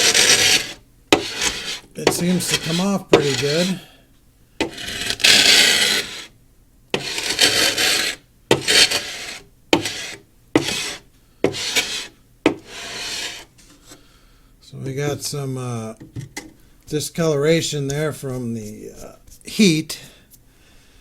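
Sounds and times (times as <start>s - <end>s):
scraper rasping paint off wood: 0.0s - 3.8s, 4.6s - 6.3s, 7.0s - 13.5s.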